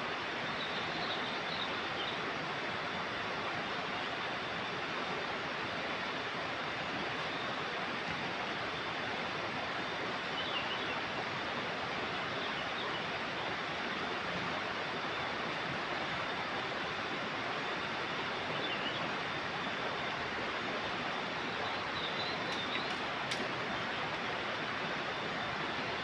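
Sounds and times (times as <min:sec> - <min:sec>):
river water flowing: 0:00.0 - 0:26.0
light clicks: 0:22.4 - 0:23.6.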